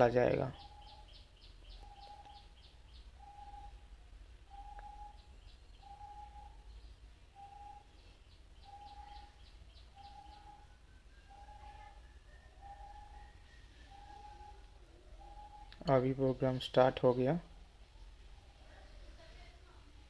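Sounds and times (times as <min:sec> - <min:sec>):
rapid high bird chirps: 0:00.0 - 0:18.6.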